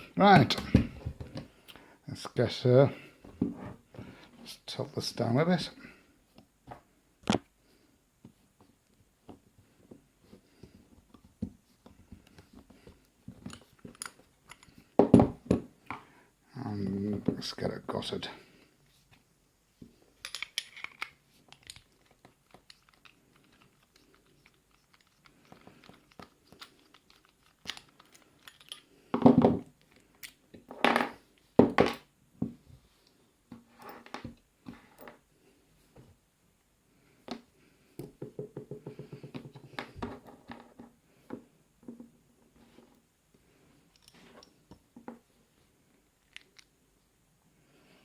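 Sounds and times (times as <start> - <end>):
small metallic clicks and scrapes: 20.2 - 29.0.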